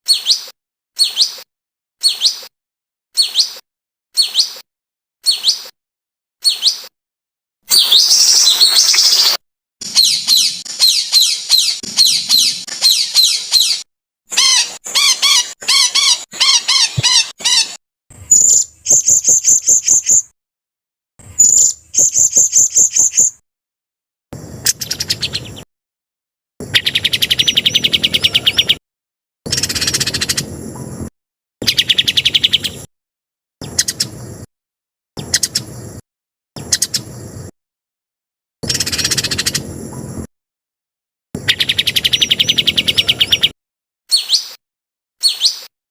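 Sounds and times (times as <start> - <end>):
songbird calls: 0.1 - 1.4, 2.0 - 2.5, 3.2 - 3.6, 4.2 - 4.6, 5.2 - 5.7, 6.4 - 6.9, 7.7 - 20.2, 21.3 - 23.3, 24.6 - 25.7, 26.6 - 28.8, 29.5 - 30.9, 31.6 - 32.9, 33.6 - 34.2, 35.2 - 35.7, 36.6 - 37.1, 38.6 - 40.1, 41.4 - 43.5, 44.1 - 44.6, 45.2 - 45.7.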